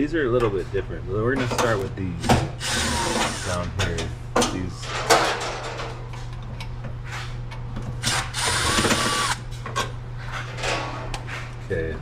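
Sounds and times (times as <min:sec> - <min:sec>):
low steady hum: 0:00.0 - 0:12.0
cordless drill motor whirring: 0:02.6 - 0:03.6, 0:08.0 - 0:09.4.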